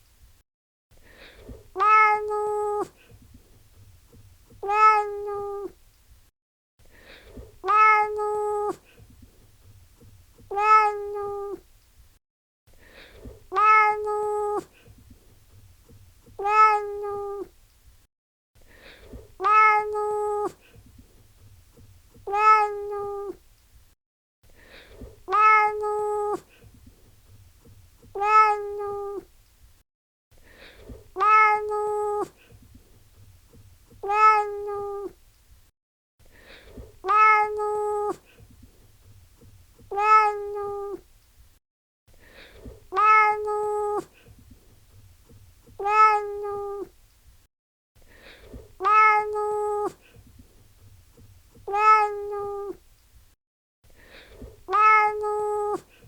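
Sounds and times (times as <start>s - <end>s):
cat meowing: 1.8s - 2.9s, 4.6s - 5.7s, 7.6s - 8.8s, 10.4s - 11.6s, 13.5s - 14.7s, 16.4s - 17.5s, 19.4s - 20.6s, 22.2s - 23.4s, 25.3s - 26.5s, 28.1s - 29.3s, 31.2s - 32.4s, 33.9s - 35.2s, 37.0s - 38.2s, 39.8s - 41.0s, 42.9s - 44.1s, 45.7s - 46.9s, 48.8s - 50.0s, 51.6s - 52.8s, 54.7s - 55.9s.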